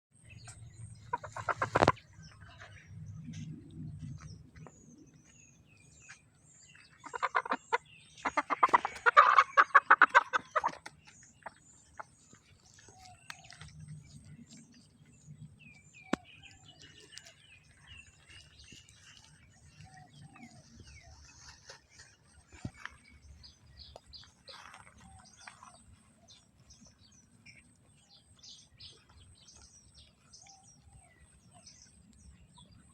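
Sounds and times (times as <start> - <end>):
rapid pulsed animal calls: 0.4 - 2.2.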